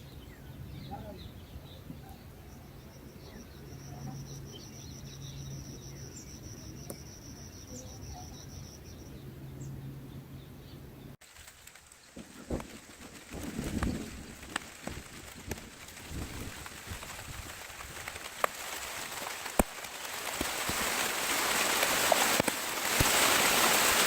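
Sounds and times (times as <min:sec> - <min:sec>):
faint bird chirps: 0:00.0 - 0:10.8.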